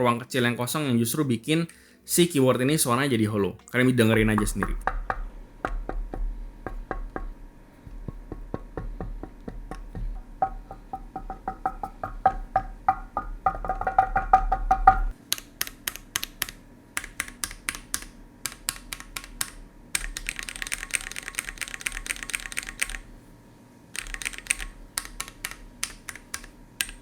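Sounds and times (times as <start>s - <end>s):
background music: 0.0s - 15.2s
mechanical keyboard typing: 13.9s - 23.1s, 24.0s - 27.0s.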